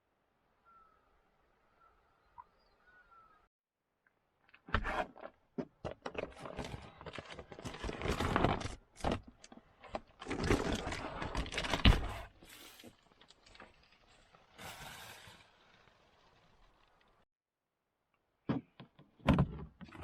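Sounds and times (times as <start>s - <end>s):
objects scraping and clattering: 4.7s - 16.6s.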